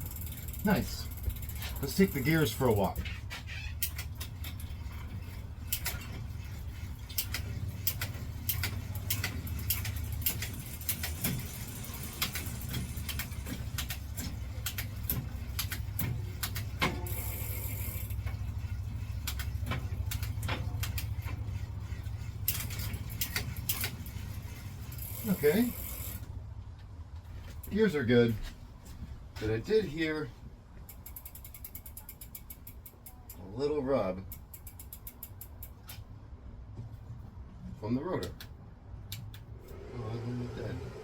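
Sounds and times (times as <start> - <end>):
bicycle chain and derailleur clicking: 0.0 - 26.3, 30.8 - 33.5, 34.2 - 36.0
spinning bicycle wheel and chain: 0.0 - 26.3, 30.9 - 33.6, 34.2 - 36.0
disc brake rotor rubbing: 1.1 - 26.3.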